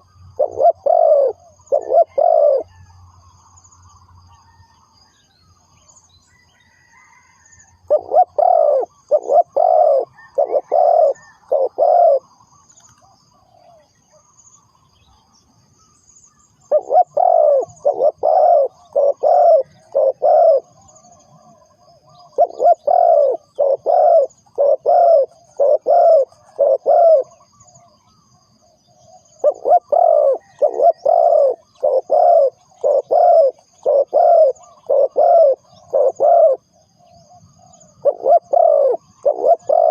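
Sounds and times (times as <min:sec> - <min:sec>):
dove cooing: 0:00.0 - 0:02.9, 0:06.8 - 0:12.4, 0:16.7 - 0:27.9, 0:28.9 - 0:39.9
faint high chirping: 0:00.0 - 0:39.9.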